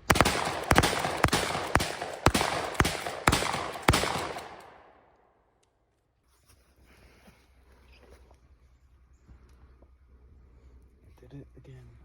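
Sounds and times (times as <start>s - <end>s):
sharp bangs with echo: 0.0s - 5.1s.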